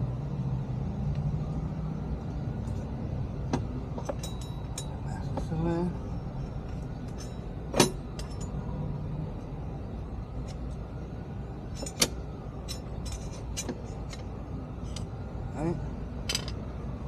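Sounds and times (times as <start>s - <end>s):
steady low rumble: 0.0s - 17.0s
metal clinks on brake caliper: 3.5s - 5.5s, 6.4s - 8.7s, 11.6s - 15.1s.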